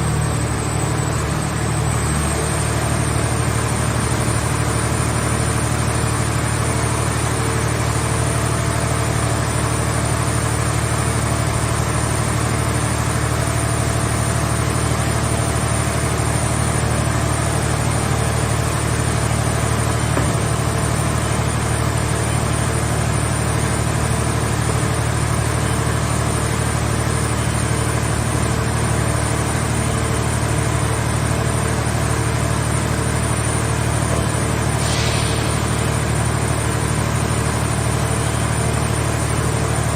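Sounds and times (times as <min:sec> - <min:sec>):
engine hum: 0:11.6 - 0:39.9.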